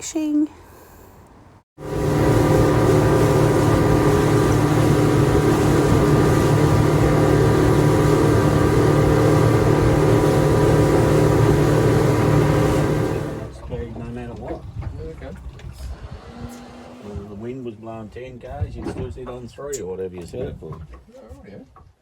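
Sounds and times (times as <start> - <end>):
boat motor running: 1.8 - 15.5.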